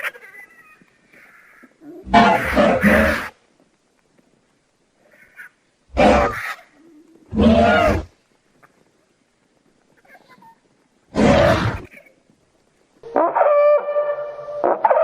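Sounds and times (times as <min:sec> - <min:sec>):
long steady creature call: 0:00.0 - 0:03.4, 0:05.0 - 0:08.1
harsh creature cry: 0:01.8 - 0:03.3, 0:05.9 - 0:06.6, 0:07.3 - 0:08.1, 0:11.1 - 0:11.9.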